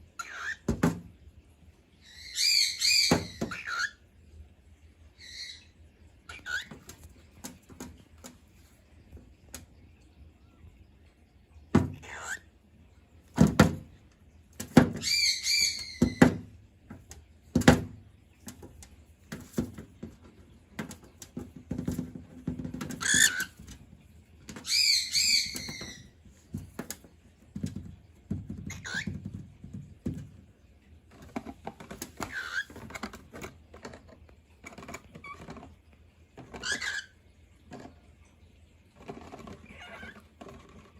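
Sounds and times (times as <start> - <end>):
cockatiels calling: 0.2 - 0.7, 2.0 - 4.0, 5.2 - 5.7, 6.3 - 7.0, 11.9 - 12.5, 14.9 - 16.4, 23.0 - 23.6, 24.6 - 26.1, 28.7 - 29.2, 32.2 - 32.9, 36.6 - 37.1, 39.6 - 40.3
sharp knocks and thumps: 13.4 - 14.0, 15.9 - 23.9, 25.5 - 30.5.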